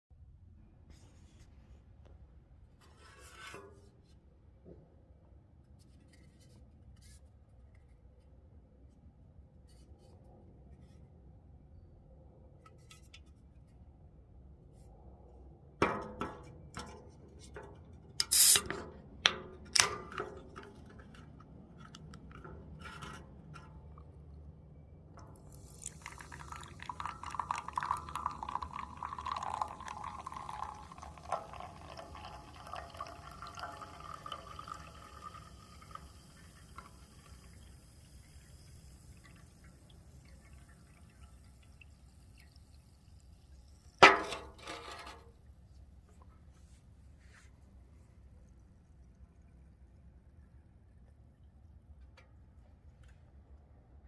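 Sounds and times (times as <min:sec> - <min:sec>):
soda fizzing poured into glass: 0:18.3 - 0:18.6, 0:25.4 - 0:44.0.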